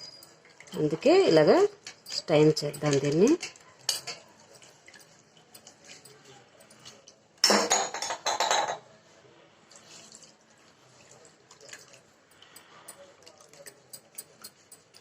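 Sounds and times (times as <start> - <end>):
kitchen vessels clinking: 0.0 - 8.9.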